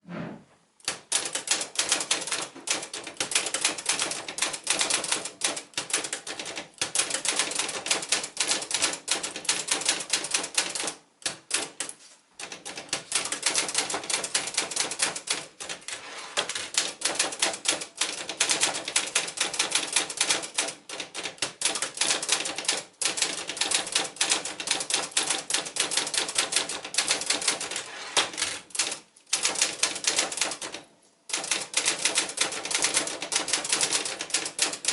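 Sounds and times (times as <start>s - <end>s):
typewriter keys striking: 0.8s - 34.9s.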